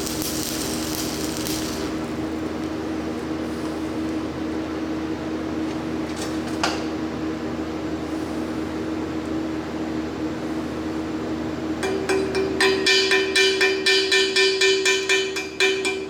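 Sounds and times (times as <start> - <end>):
hiss: 0.0 - 2.0
steady tones: 0.0 - 2.4
steady machine hum: 0.0 - 6.0.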